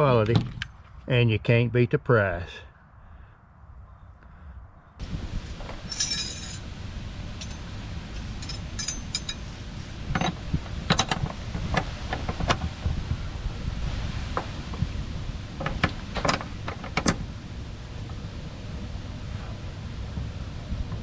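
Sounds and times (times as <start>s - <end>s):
steady low rumble: 2.8s - 21.0s
metal wrenches clinking: 5.6s - 6.7s, 7.3s - 10.4s.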